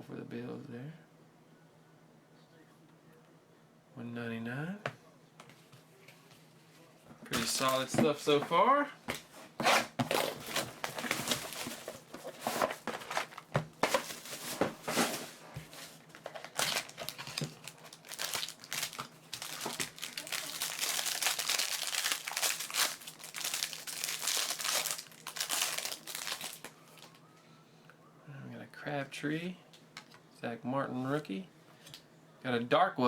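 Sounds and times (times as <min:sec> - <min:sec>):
foil wrappers tearing and crinkling: 0:09.7 - 0:27.2.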